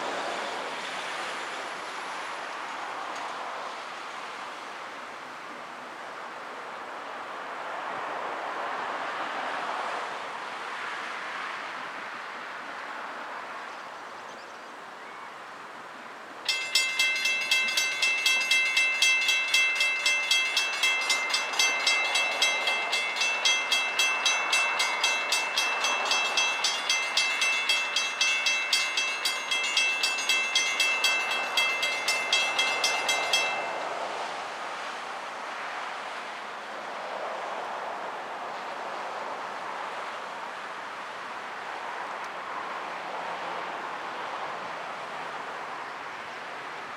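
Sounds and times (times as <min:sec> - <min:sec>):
soft wind: 0:00.0 - 0:46.9
railroad crossing bell ringing: 0:16.4 - 0:35.0.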